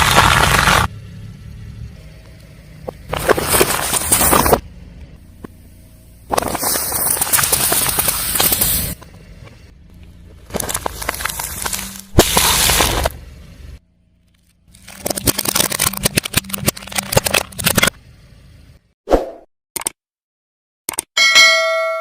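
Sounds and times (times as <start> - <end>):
tyre crushing crunchy objects: 0.0 - 0.9, 2.9 - 4.6, 6.3 - 9.0, 10.3 - 13.4
car engine rumble: 0.0 - 18.9.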